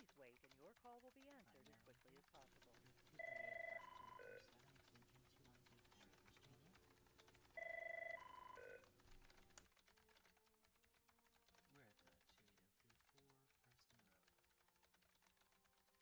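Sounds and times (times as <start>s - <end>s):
faint office background: 0.0s - 16.0s
electronic telephone beeps: 3.2s - 4.6s, 7.6s - 8.9s.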